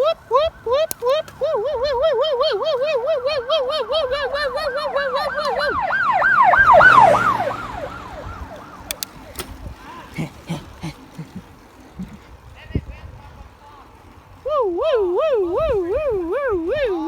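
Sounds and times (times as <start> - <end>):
electronic siren warbling: 0.5 - 8.9
faint clicks: 0.7 - 1.6, 8.5 - 9.7.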